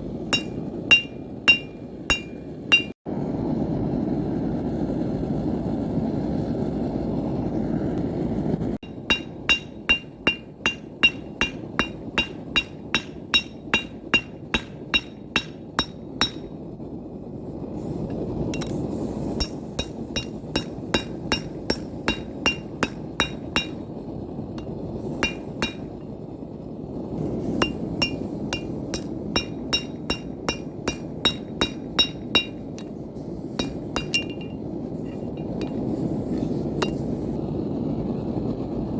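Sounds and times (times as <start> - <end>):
hammer striking metal on anvil: 0.3 - 3.0, 8.8 - 16.6, 18.6 - 18.8, 19.4 - 24.0, 24.6 - 26.2, 27.4 - 35.8, 36.8 - 37.1.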